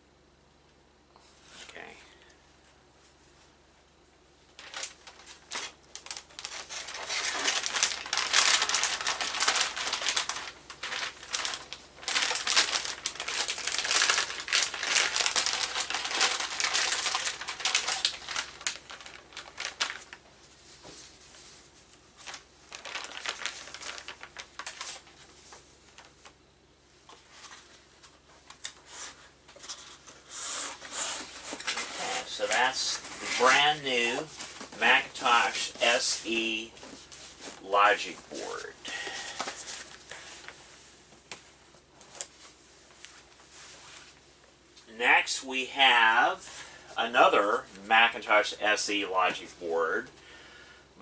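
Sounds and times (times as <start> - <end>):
packaging crinkling: 4.5 - 20.2, 21.0 - 26.4.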